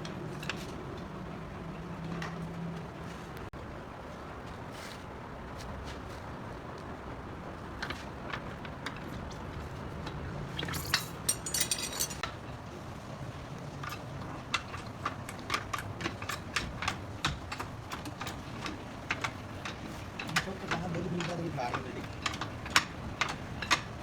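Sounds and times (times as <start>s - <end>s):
hand tools clinking on metal parts: 10.6s - 12.2s.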